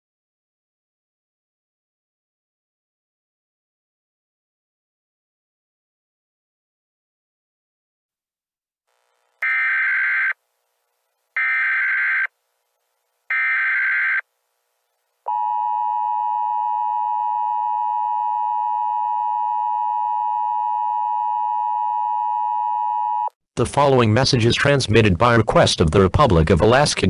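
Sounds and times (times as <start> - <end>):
data tone bursts: 9.4 - 10.4, 11.4 - 12.3, 13.3 - 14.2
two-tone attention signal: 9.4 - 10.4.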